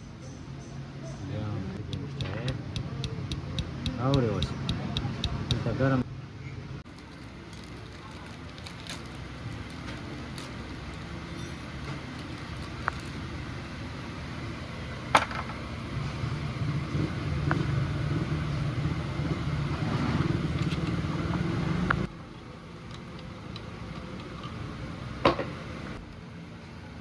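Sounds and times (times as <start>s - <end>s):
motorcycle engine rumbling: 1.0s - 22.1s.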